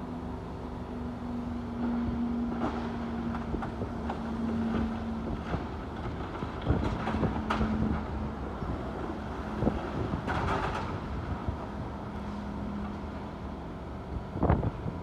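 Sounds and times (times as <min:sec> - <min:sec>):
demolition machinery humming: 0:00.0 - 0:15.0
wind buffeting microphone: 0:14.2 - 0:15.0.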